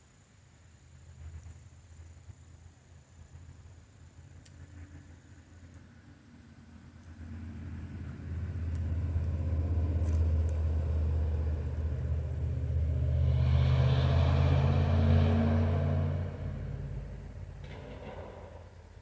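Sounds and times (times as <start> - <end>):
passing vehicle engine rumble: 7.0 - 19.0.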